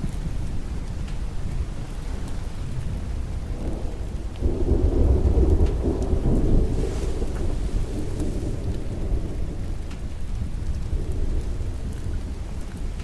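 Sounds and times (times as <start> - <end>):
heavy rain: 0.0 - 13.0
thunder rumbling: 2.0 - 12.8.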